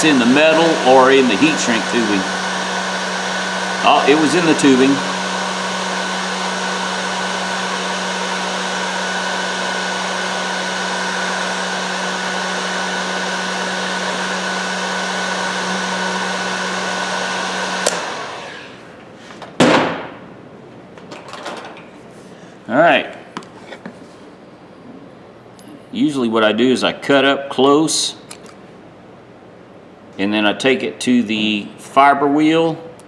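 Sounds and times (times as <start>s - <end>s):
heat gun blowing: 0.0s - 18.9s.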